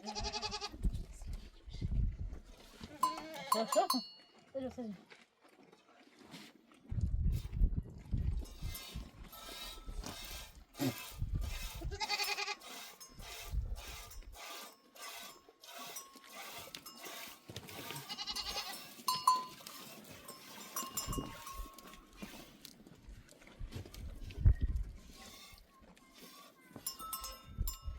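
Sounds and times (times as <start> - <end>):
flock bleating: 0.0 - 0.8, 2.9 - 4.1, 11.8 - 12.6, 17.8 - 18.9
neck bells clinking: 3.0 - 4.4, 14.1 - 17.2, 18.4 - 22.2, 26.8 - 27.9.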